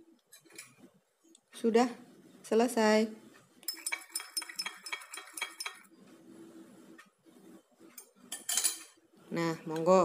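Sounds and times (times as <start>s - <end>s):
spoon clinking in a dish: 3.6s - 5.9s.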